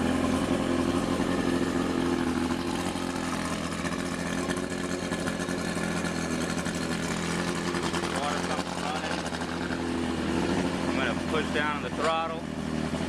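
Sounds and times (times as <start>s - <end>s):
outboard motor idling: 0.0s - 13.0s.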